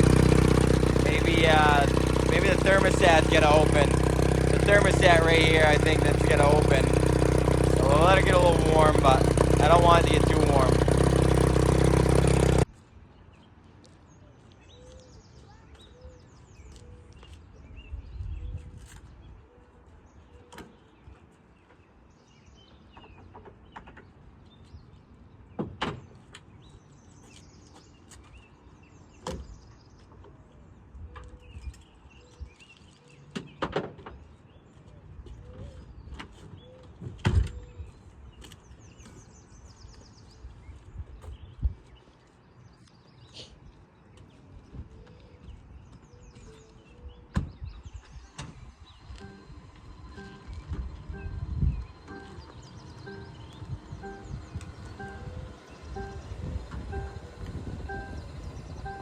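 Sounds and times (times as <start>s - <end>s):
outboard motor running: 0.0s - 12.7s, 48.6s - 59.0s.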